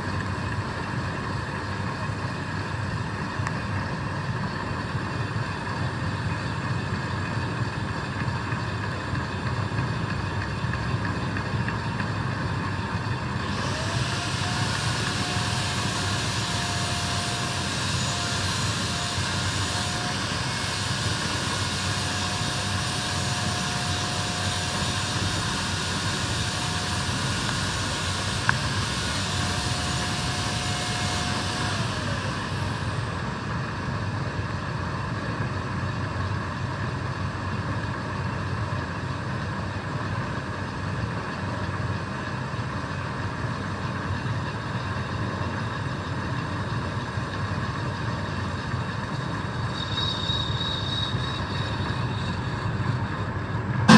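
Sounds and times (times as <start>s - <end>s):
lathe running: 4.4s - 53.9s
whine: 47.0s - 53.9s.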